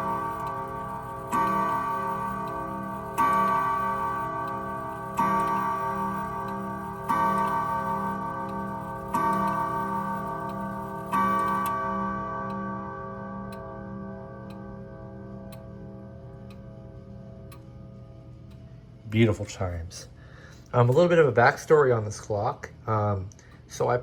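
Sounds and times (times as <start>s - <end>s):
clock striking on chime rods: 0.0s - 16.6s
pendulum ticking: 0.0s - 19.1s.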